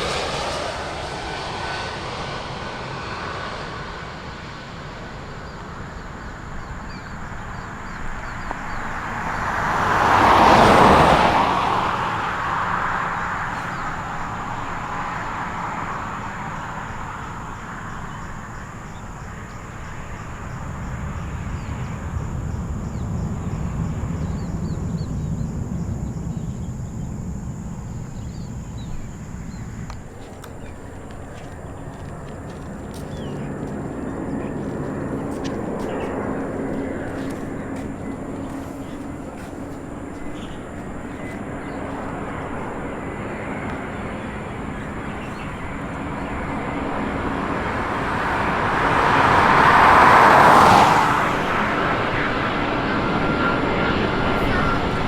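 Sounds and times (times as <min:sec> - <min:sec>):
vehicle passing close: 0:08.3 - 0:17.6, 0:27.0 - 0:55.0.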